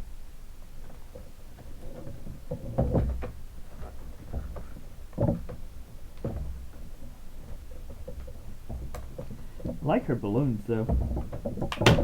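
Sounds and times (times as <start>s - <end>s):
box knocks and rustles: 10.9s - 12.0s.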